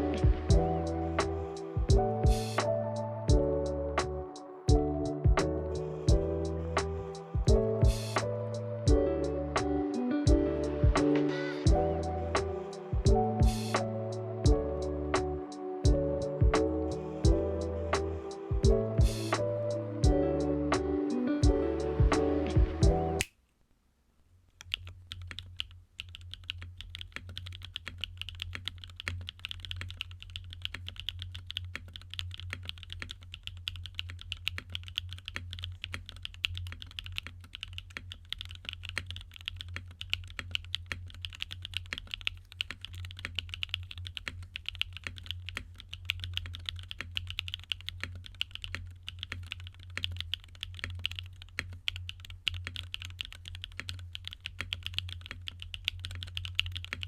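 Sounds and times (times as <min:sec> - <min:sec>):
mechanical keyboard typing: 0:24.6 - 0:57.0.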